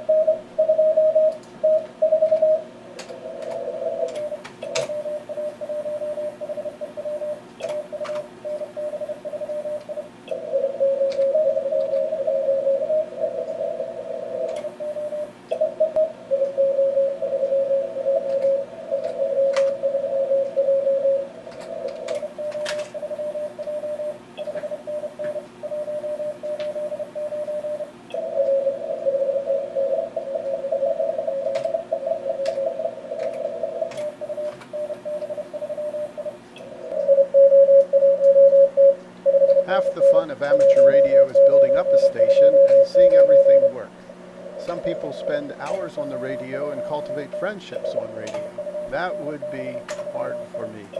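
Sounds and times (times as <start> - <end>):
morse code tones: 0.0 - 2.7, 3.3 - 50.9
radio band noise hiss: 39.4 - 50.9.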